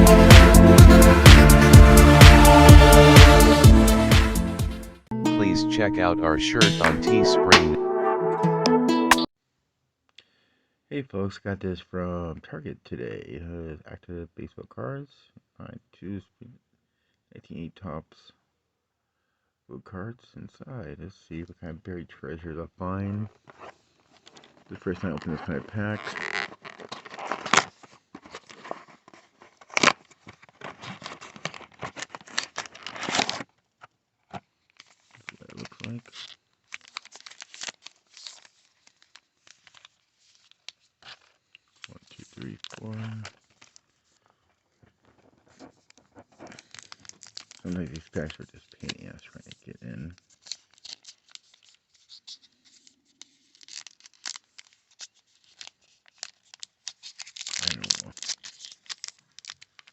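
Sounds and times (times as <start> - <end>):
wrapper crinkling and tearing: 23.4 - 49.0, 50.2 - 59.9.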